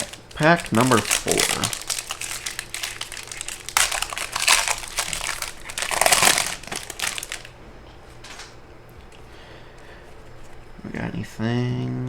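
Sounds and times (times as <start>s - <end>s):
plastic wrapper crinkling: 0.0s - 7.6s.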